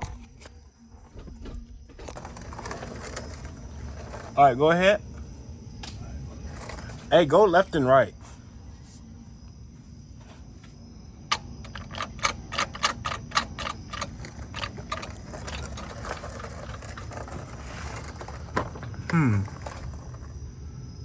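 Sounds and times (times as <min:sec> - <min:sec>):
steady low hum: 0:00.0 - 0:21.0
gear shifter clicks and clunks: 0:11.3 - 0:17.1.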